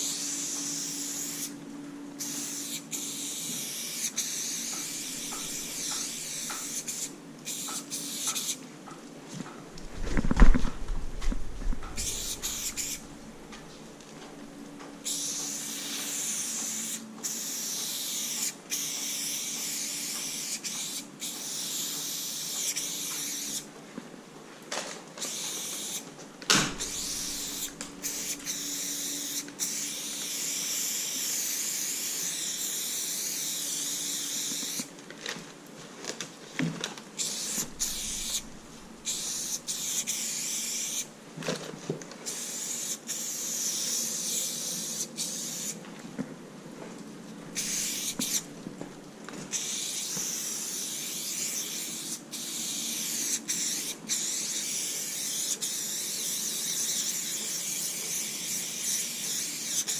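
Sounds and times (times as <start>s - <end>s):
spray can hissing: 0.0s - 1.6s, 2.2s - 8.6s, 11.6s - 13.1s, 15.0s - 23.7s, 25.2s - 34.9s, 37.2s - 41.1s, 42.3s - 45.8s, 47.5s - 48.5s, 49.5s - 59.9s.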